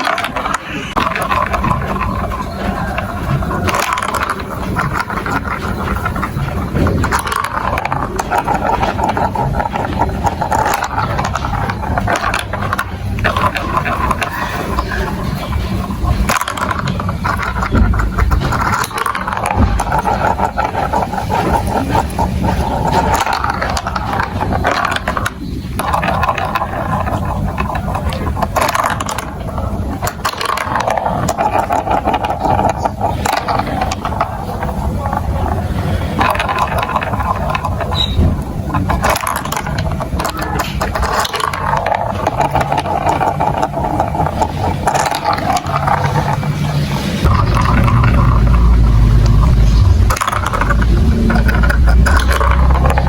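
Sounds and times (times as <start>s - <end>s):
marbles rolling down plastic run: 0.0s - 53.0s.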